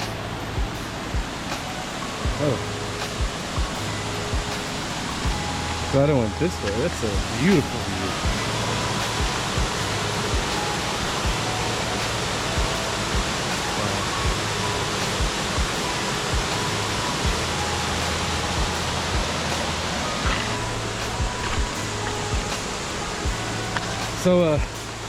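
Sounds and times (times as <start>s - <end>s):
soft low thumps: 0.0s - 1.5s, 2.2s - 10.6s, 11.2s - 13.5s, 20.2s - 25.0s
waterfall rushing: 0.0s - 25.0s.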